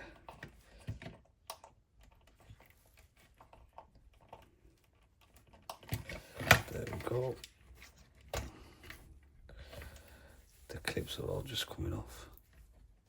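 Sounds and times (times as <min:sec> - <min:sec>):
plastic parts clicking and tapping: 0:00.0 - 0:09.0.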